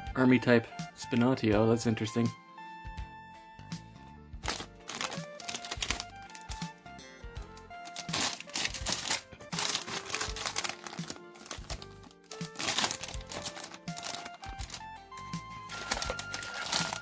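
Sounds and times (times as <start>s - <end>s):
background music: 0.0s - 17.0s
plastic packaging crinkling: 4.5s - 6.6s, 7.8s - 17.0s.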